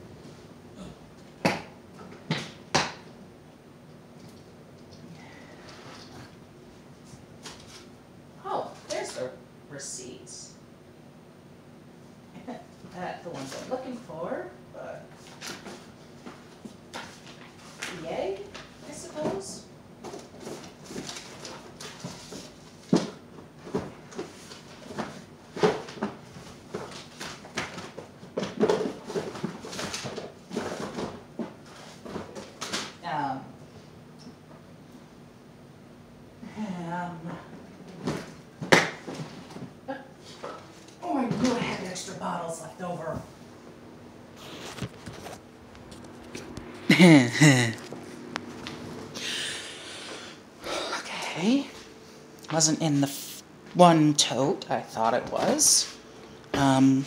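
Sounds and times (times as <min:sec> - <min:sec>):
breathy rush of noise: 0:46.3 - 0:51.1
person humming: 0:46.9 - 0:47.9.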